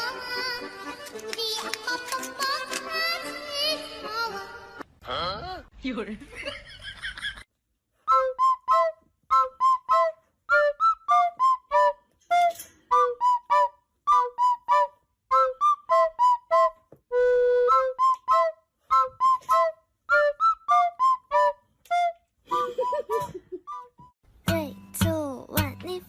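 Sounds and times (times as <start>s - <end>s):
whistled flute-like melody: 8.0s - 24.1s.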